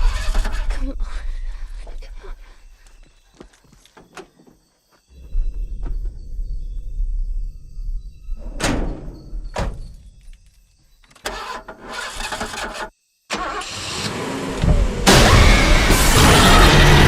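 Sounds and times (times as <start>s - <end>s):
low rumble: 5.1s - 9.6s.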